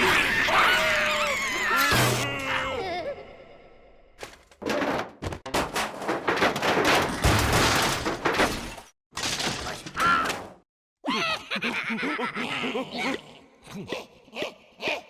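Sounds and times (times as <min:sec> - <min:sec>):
cartoon crash and impact effects: 0:01.6 - 0:02.5.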